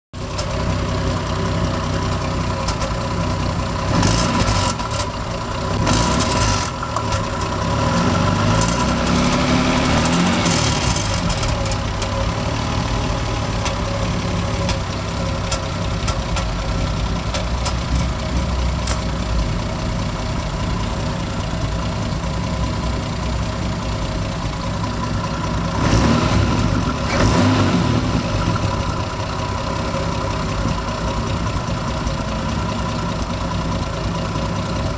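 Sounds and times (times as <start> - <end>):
car engine idling and revving: 0.2 - 34.9
turbocharger whine: 3.8 - 15.2.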